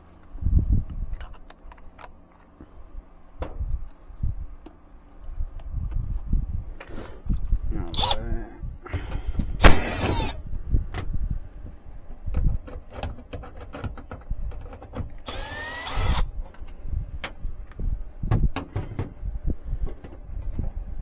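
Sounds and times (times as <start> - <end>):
brief rasping burst: 9.6 - 10.4
knocks and clicks of tools: 12.3 - 19.2.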